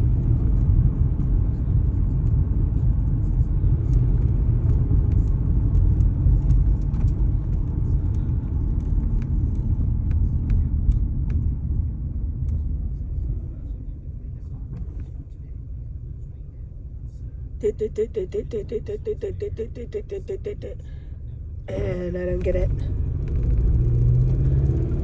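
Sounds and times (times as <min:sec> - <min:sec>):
car engine rumble inside cabin: 0:00.0 - 0:25.0
person talking: 0:17.6 - 0:21.0, 0:21.7 - 0:22.9.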